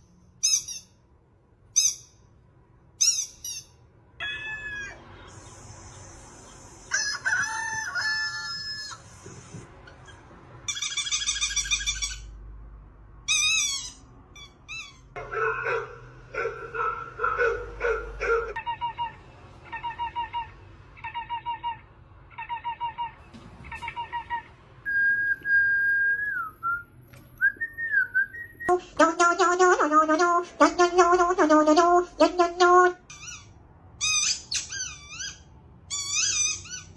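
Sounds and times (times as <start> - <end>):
bird-like calls and squeaks: 0.0 - 1.0, 3.0 - 9.2, 9.8 - 12.4, 13.3 - 15.2, 33.0 - 36.9.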